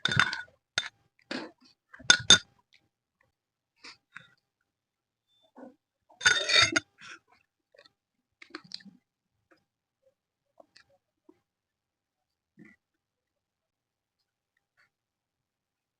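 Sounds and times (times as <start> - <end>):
mouth clicks and eating smacks: 7.8 - 9.0.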